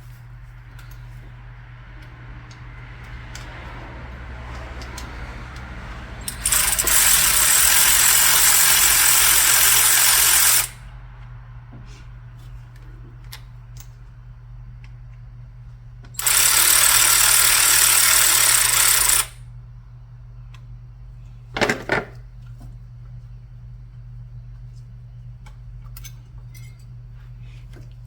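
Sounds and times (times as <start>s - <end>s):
hand tools clicking and rattling: 4.4s - 10.8s
power tool running: 6.2s - 10.8s, 16.2s - 19.4s.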